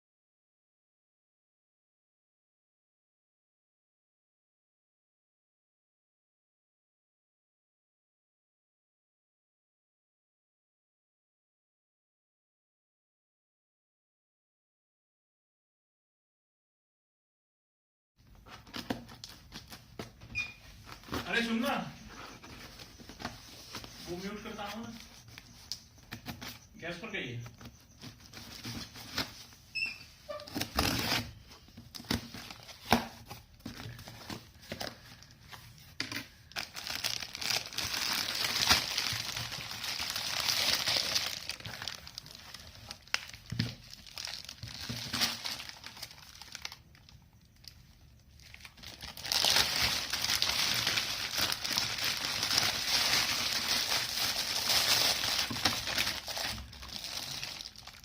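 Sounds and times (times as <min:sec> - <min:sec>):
plastic packaging crinkling: 0:18.6 - 0:26.7, 0:27.6 - 0:58.0.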